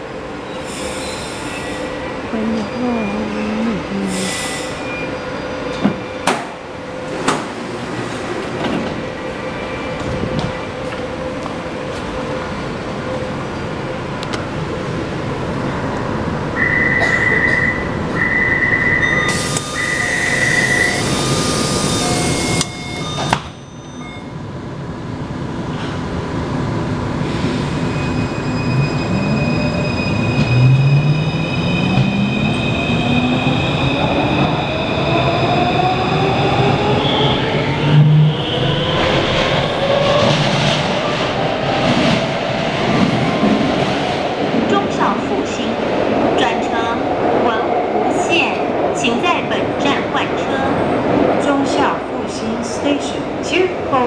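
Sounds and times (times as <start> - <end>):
door warning chime beeping: 19.0 - 24.3.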